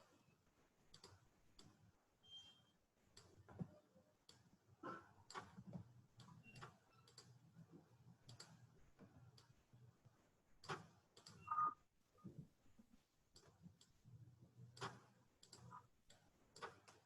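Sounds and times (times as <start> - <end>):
computer mouse clicks: 0.9 - 1.8, 8.3 - 8.6, 14.8 - 17.0.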